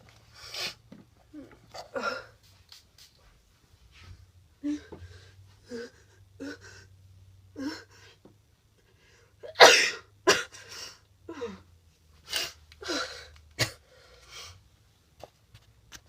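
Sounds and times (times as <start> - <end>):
woman coughing: 9.5 - 10.6.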